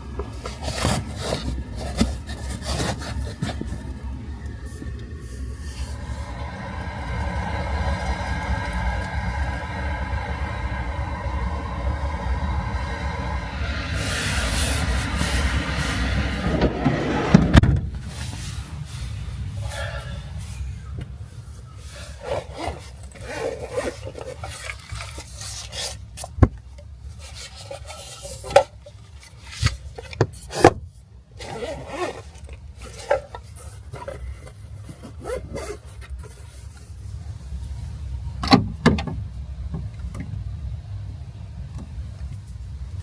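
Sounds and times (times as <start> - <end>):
steady low rumble: 0.0 - 25.6
rubbing and rustling: 0.3 - 6.0.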